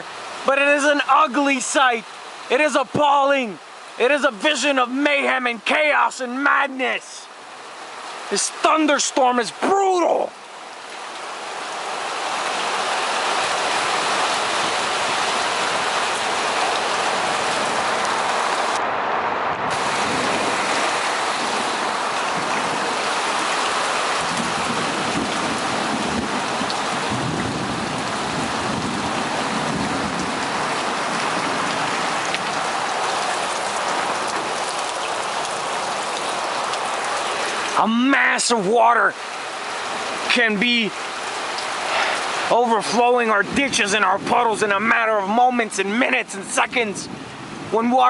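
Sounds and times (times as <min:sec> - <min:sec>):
heavy rain pouring: 0:00.0 - 0:48.0
thunder rumble: 0:13.8 - 0:23.6, 0:24.2 - 0:32.8.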